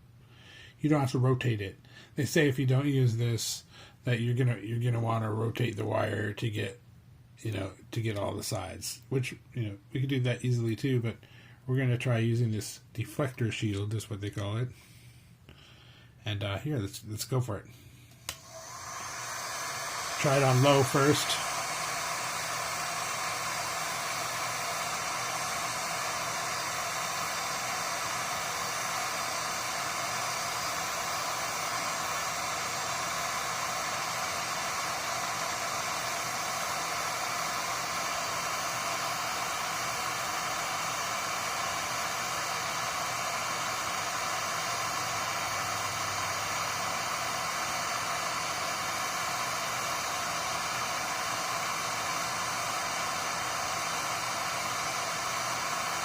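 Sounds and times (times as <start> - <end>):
heat gun blowing: 17.8 - 56.0.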